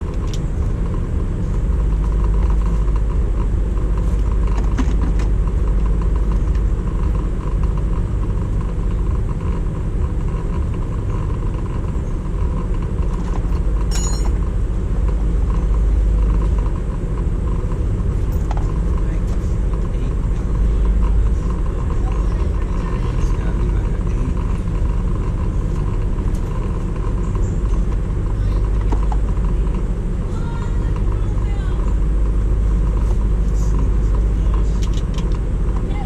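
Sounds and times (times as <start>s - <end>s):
vehicle engine rumbling: 0.0s - 36.0s.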